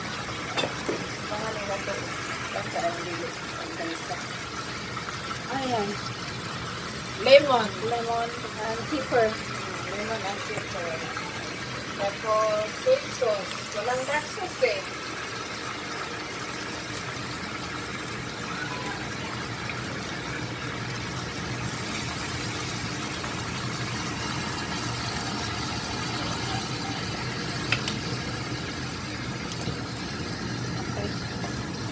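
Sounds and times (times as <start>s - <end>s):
stovetop cooking hiss: 0.0s - 31.9s.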